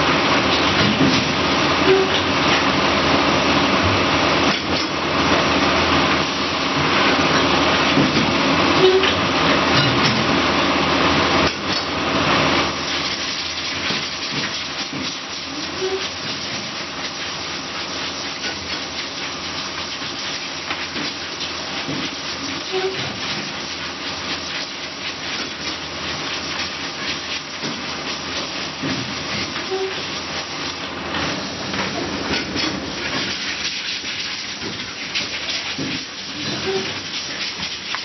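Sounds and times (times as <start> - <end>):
short tone: 8.8 - 9.2.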